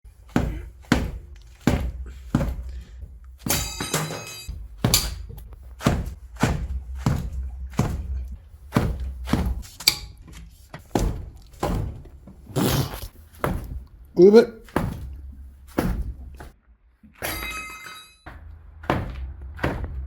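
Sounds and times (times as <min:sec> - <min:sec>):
heavy blows on a tool: 0:00.1 - 0:10.2
ringing metallic clang: 0:03.4 - 0:05.3, 0:17.2 - 0:18.3.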